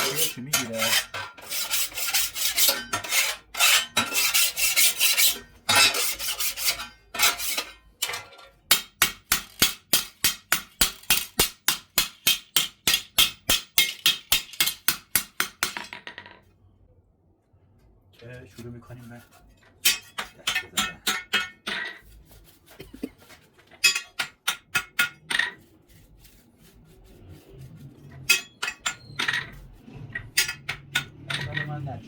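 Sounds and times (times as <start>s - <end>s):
file rasping on steel: 0.0s - 7.7s.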